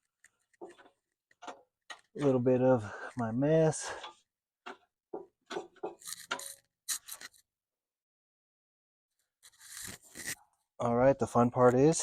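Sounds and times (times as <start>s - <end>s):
handling scrapes and clinks: 5.5s - 7.4s.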